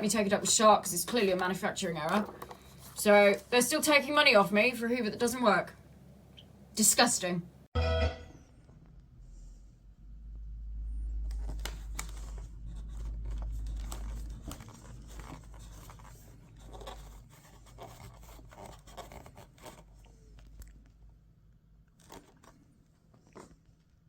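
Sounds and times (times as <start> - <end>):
clicks and crinkling rustles: 0.0 - 3.6, 11.2 - 21.0, 21.8 - 24.0
low rumble: 8.6 - 14.6.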